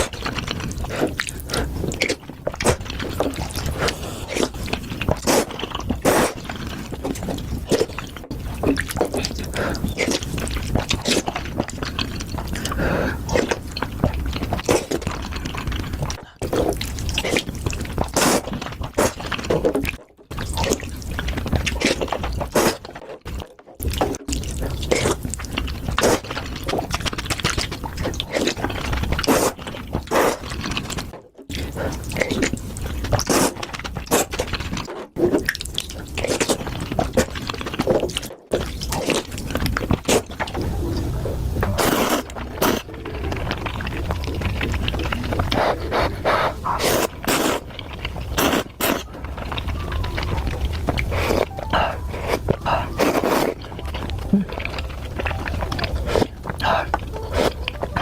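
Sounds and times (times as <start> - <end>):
close chewing and mouth smacks: 0.0 - 58.0.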